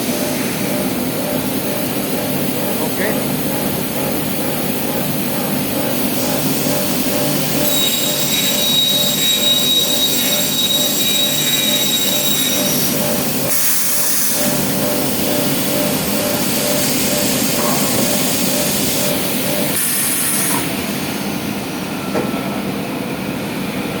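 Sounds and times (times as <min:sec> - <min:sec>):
cnc machine running: 0:00.0 - 0:24.0
high-pitched whine: 0:06.2 - 0:20.6.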